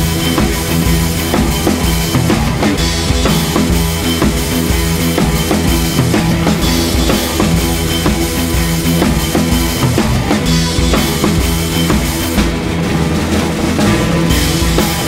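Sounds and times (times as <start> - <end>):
drum kit steady beat: 0.0 - 15.0
sustained instrument tones: 5.5 - 10.9.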